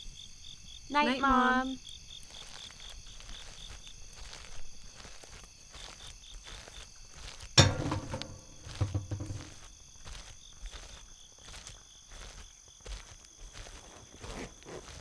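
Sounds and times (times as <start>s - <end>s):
crickets chirping: 0.0s - 15.0s
sharp loud knock: 7.6s - 9.5s
dull low thuds: 7.6s - 9.7s.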